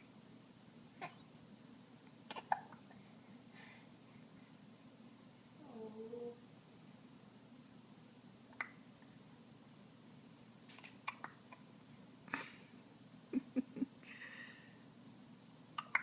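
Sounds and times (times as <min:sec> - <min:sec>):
baby hiccupping: 0:01.0 - 0:01.2, 0:02.3 - 0:02.9, 0:10.8 - 0:11.7, 0:15.8 - 0:16.0.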